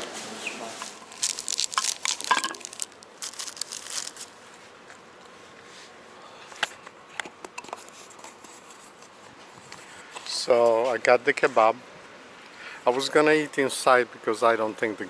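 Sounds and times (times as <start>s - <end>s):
wrapping crinkling and rustling: 0.7s - 4.4s.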